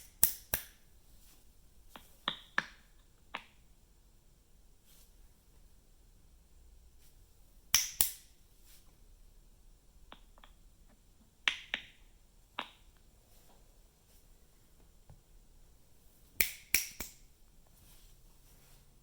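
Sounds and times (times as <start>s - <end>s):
sharp snapping clicks: 0.0s - 0.8s, 7.7s - 8.3s, 16.4s - 17.3s.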